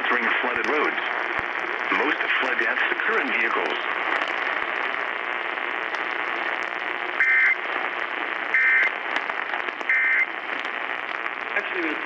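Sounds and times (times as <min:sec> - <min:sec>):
radio static hiss: 0:00.0 - 0:12.0
two-tone digital data bursts: 0:07.2 - 0:07.6, 0:08.5 - 0:08.9, 0:09.9 - 0:10.3.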